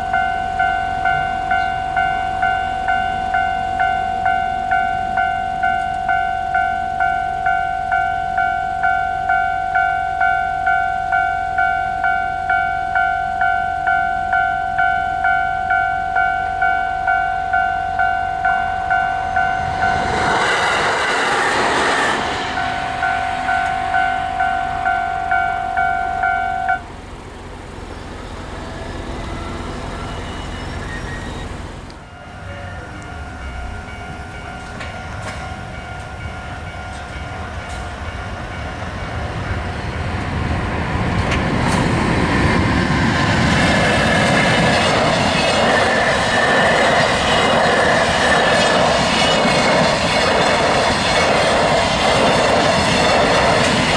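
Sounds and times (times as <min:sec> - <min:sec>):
level crossing warning bell: 0:00.0 - 0:53.9
train wheels clattering: 0:28.6 - 0:53.9.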